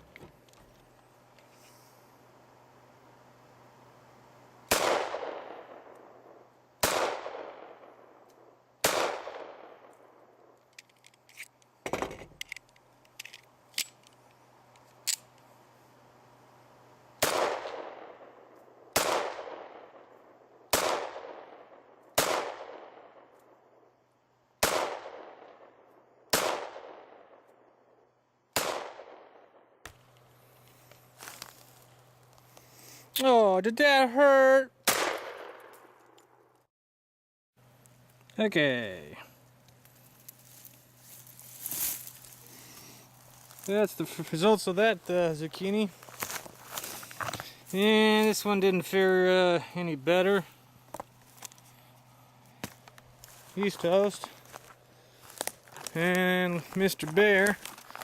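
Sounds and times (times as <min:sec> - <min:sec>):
pistol shots with echo: 0:04.7 - 0:05.9, 0:06.8 - 0:08.0, 0:08.8 - 0:09.8, 0:17.2 - 0:20.0, 0:20.7 - 0:23.3, 0:24.6 - 0:25.7, 0:26.3 - 0:27.4, 0:28.6 - 0:29.4, 0:34.8 - 0:35.7.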